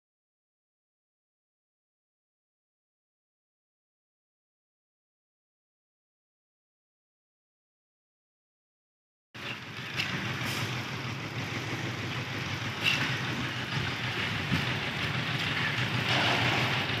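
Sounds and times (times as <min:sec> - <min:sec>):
engine running with low hum: 0:09.4 - 0:17.0
noisy work sound: 0:09.4 - 0:17.0.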